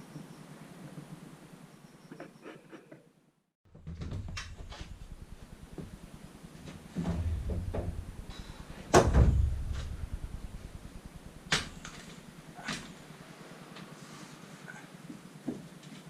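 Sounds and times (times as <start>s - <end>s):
knocks of building work: 3.7s - 6.0s, 6.6s - 13.0s
heavy thud: 3.8s - 6.2s, 6.9s - 13.0s.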